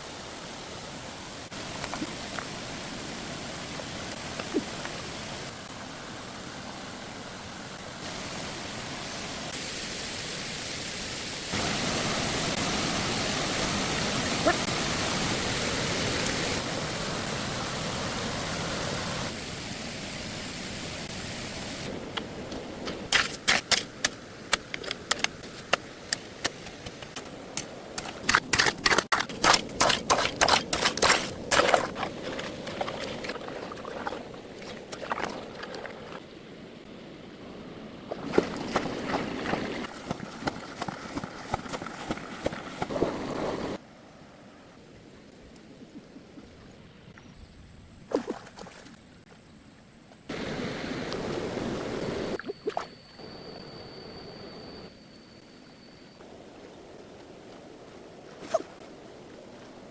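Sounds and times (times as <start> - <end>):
rushing water: 0.0 - 36.2, 37.7 - 43.8, 50.3 - 53.0.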